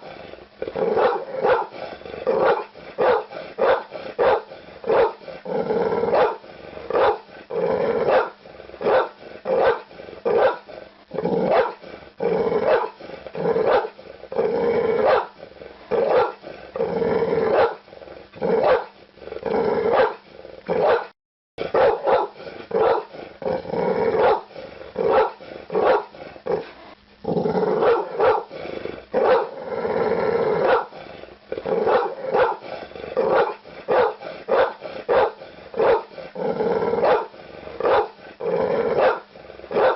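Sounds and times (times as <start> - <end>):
dog growling: 0.0 - 39.9
dog barking: 1.0 - 1.7, 2.4 - 5.2, 6.1 - 6.4, 7.0 - 7.2, 8.1 - 10.7, 11.5 - 11.8, 12.7 - 13.0, 13.6 - 14.0, 15.0 - 15.4, 16.0 - 16.4, 17.5 - 17.8, 18.6 - 18.9, 19.9 - 20.2, 20.8 - 23.1, 24.2 - 26.2, 27.8 - 28.5, 29.2 - 29.6, 30.6 - 30.9, 31.8 - 32.6, 33.2 - 36.1, 37.0 - 38.2, 39.0 - 39.9.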